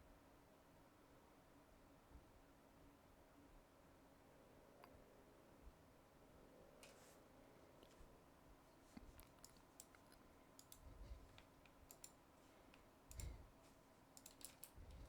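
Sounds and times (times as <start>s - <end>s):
mouse and keyboard clicks: 9.1s - 13.4s, 14.2s - 15.0s.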